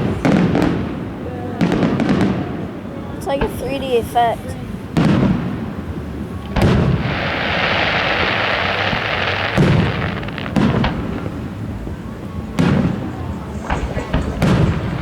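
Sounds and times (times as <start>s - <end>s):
fireworks booming: 0.0s - 15.0s
fireworks hissing: 3.2s - 5.2s, 6.4s - 11.8s.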